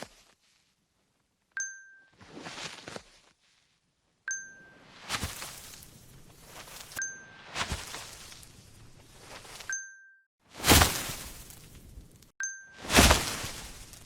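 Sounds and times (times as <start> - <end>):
bright bell-like ding: 1.6 - 2.2, 7.0 - 7.4, 12.4 - 12.9.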